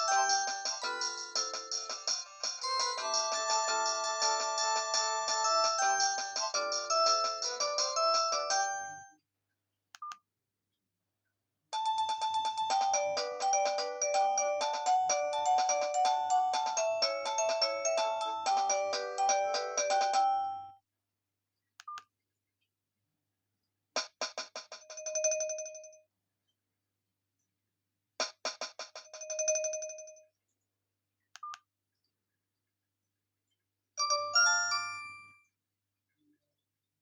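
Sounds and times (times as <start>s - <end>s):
mobile phone ringtones: 0.0s - 9.1s, 11.8s - 20.7s, 34.0s - 35.3s.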